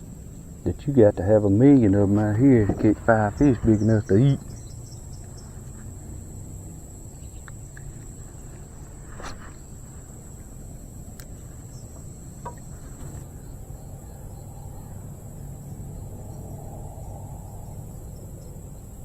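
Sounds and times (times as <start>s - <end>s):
insects trilling: 0.0s - 19.0s
low background rumble: 0.0s - 19.0s
faint clicks: 7.2s - 13.3s.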